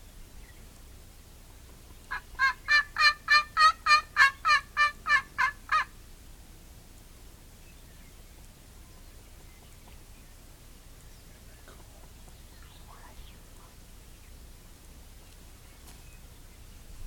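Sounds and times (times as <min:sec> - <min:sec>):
wild turkey yelping: 0:02.1 - 0:05.9.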